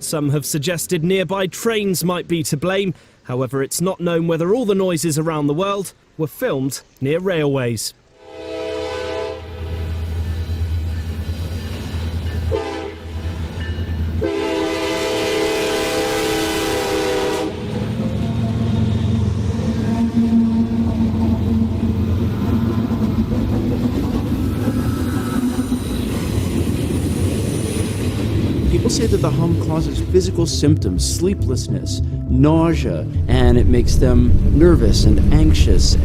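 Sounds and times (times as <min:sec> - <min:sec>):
train horn blasts: 0:08.1 - 0:10.2, 0:12.4 - 0:13.4, 0:14.1 - 0:22.0
train rumbling: 0:08.2 - 0:36.0.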